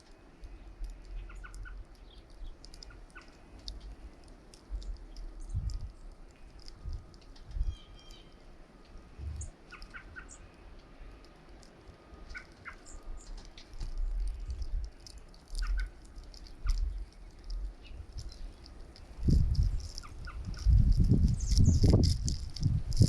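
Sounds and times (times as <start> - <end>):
small birds chirping: 0.0 - 23.0
wind buffeting microphone: 4.7 - 8.0, 9.1 - 9.6, 15.6 - 23.0.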